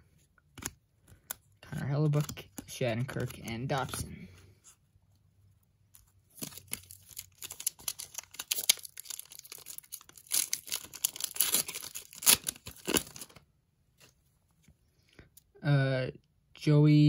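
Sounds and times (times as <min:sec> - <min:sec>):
wrapper tearing and crinkling: 0:06.3 - 0:13.4.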